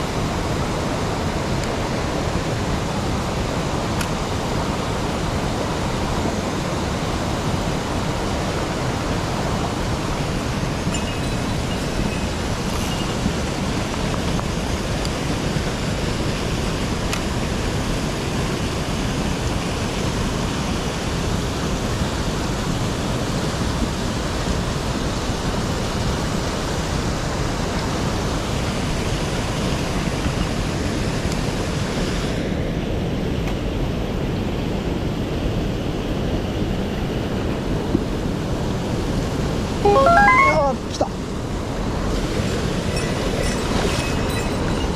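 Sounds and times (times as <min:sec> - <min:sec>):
stream water rushing: 0:00.0 - 0:32.2
short rising and falling pitched sound: 0:39.8 - 0:41.1.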